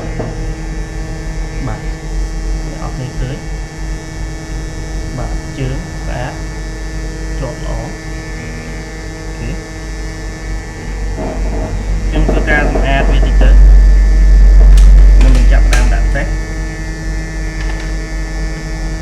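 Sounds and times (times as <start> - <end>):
electrical mains hum: 0.0 - 19.0.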